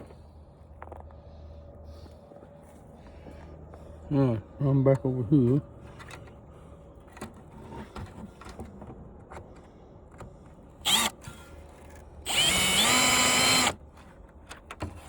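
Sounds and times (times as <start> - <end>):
power screw gun whirring: 10.8 - 11.5, 12.2 - 13.8.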